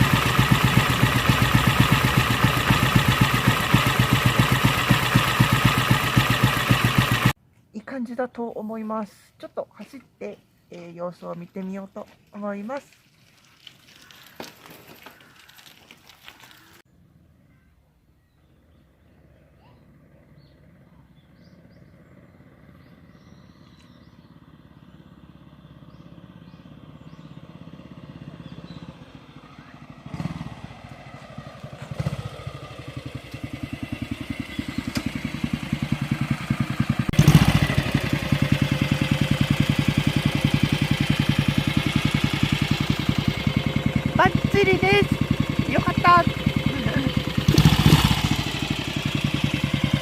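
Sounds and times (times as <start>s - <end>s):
motorcycle throttle blips: 0.0s - 7.3s, 20.4s - 50.0s
motorcycle engine running: 0.0s - 7.4s, 18.7s - 50.0s.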